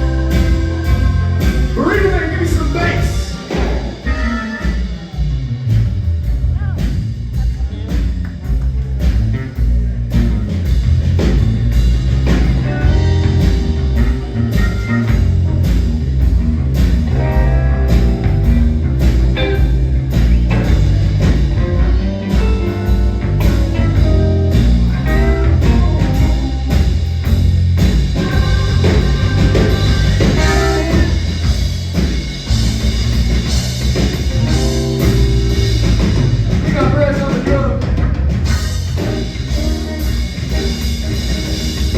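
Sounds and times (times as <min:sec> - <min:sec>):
electric guitar: 0:00.0 - 0:05.9, 0:07.9 - 0:41.9
drum kit beat: 0:00.0 - 0:41.9.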